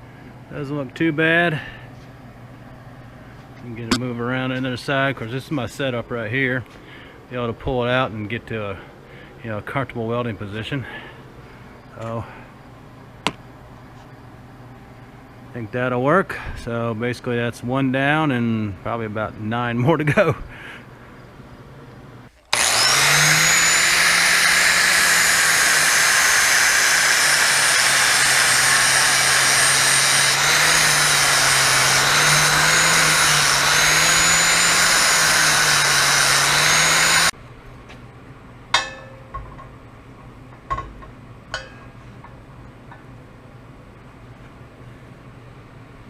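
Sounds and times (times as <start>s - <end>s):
angle grinder on steel: 22.4s - 37.3s.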